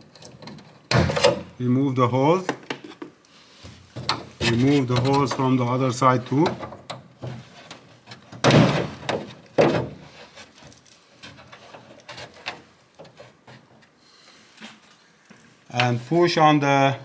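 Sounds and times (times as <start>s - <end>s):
rubber hose scraping on plastic: 4.2s - 5.5s, 9.2s - 13.8s.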